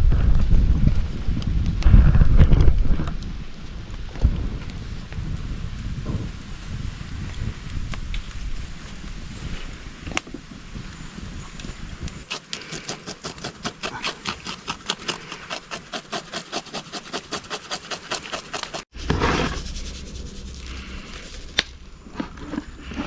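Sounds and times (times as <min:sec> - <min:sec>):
rough noise: 0:12.2 - 0:23.0
fast rhythmic scraping: 0:12.3 - 0:21.8.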